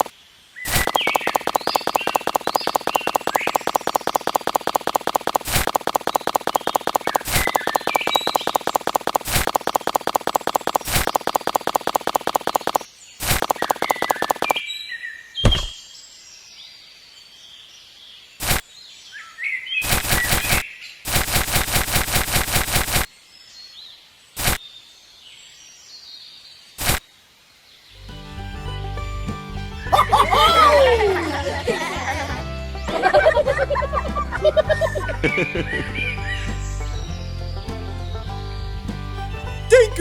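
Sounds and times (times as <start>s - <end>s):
birds chirping: 0.0s - 27.0s, 27.6s - 40.0s
bursts of rapid clicking: 0.7s - 14.6s, 18.4s - 18.6s, 19.8s - 23.1s, 24.4s - 24.6s, 26.8s - 27.0s
sharp knocks: 15.4s - 15.8s.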